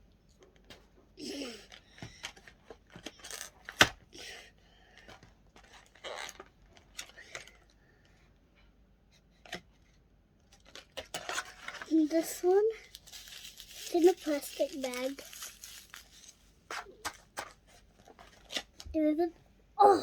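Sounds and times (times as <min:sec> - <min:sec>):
packaging rustling and tearing: 0:10.6 - 0:18.8.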